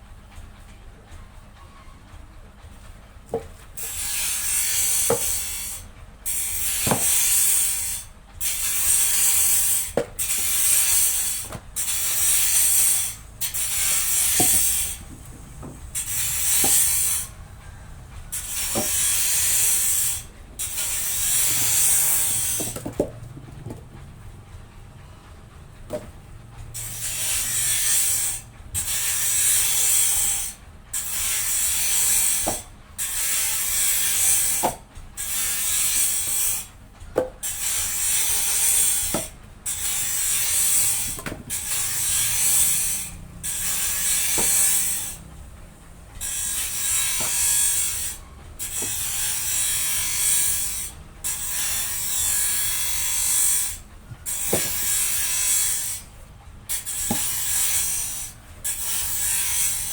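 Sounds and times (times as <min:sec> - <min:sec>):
rhythmic scraping strokes: 0:00.0 - 0:59.9.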